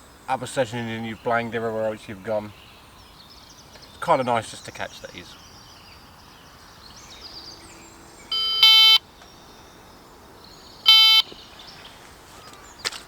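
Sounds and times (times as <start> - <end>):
faint birdsong: 0.0 - 13.0
electronic bite alarm beeping: 8.3 - 9.0, 10.8 - 11.4.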